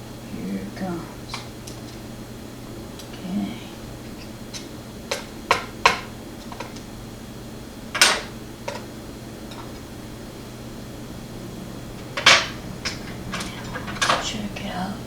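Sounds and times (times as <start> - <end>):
small metal parts clicking: 12.0 - 14.4.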